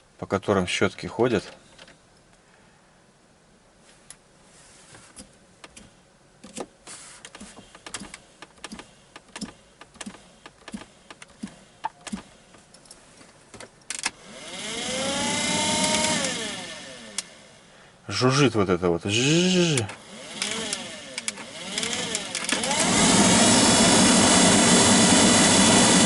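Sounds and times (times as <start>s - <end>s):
electric motor whine and buzz: 14.0s - 17.7s, 19.2s - 26.0s.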